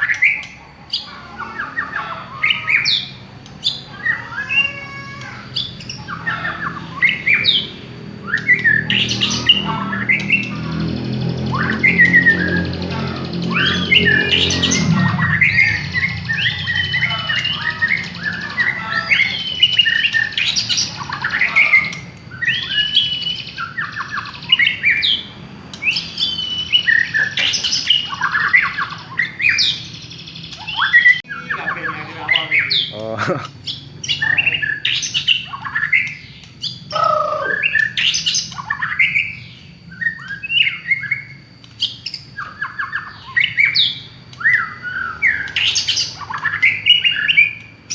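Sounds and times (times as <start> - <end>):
songbird singing: 0.0 - 47.9.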